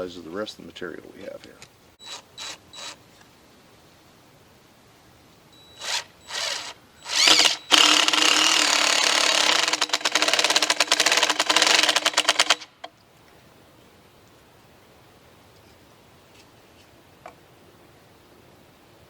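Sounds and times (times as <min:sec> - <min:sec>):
power drill driving a screw: 0:02.0 - 0:03.0, 0:05.8 - 0:12.7.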